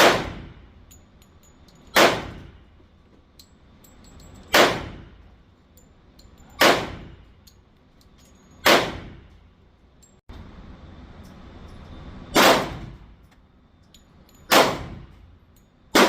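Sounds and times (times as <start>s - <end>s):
pistol shots: 0.0s - 0.5s, 2.0s - 2.5s, 4.5s - 5.1s, 6.6s - 7.2s, 8.6s - 9.2s, 12.4s - 12.9s, 14.5s - 15.1s.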